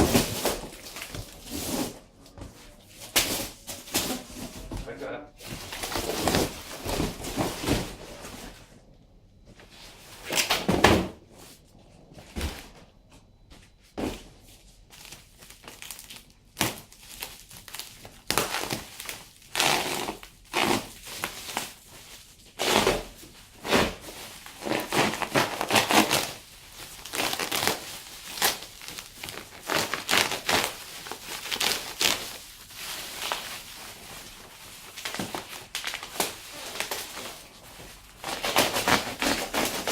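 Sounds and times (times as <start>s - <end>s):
packing material crumpling: 14.9s - 39.9s.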